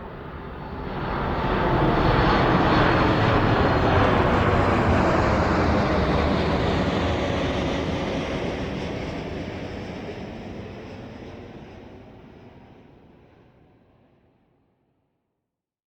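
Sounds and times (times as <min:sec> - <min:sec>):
airplane flying past: 0:00.0 - 0:12.7.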